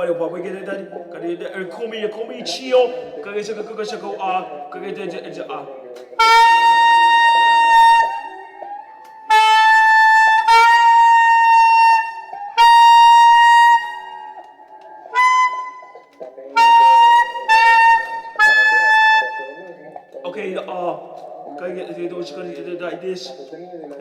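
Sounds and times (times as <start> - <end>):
saxophone playing held notes: 6.2 - 19.9.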